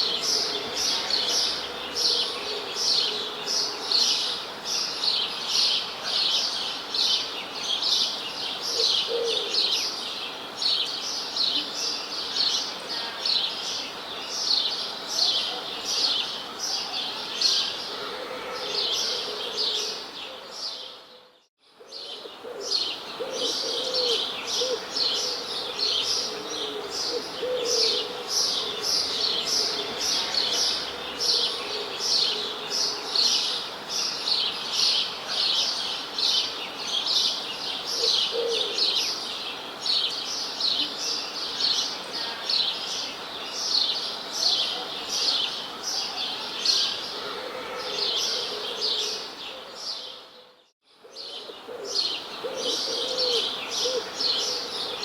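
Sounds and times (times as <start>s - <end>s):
low bird calls: 17.8s - 33.6s, 47.1s - 55.0s.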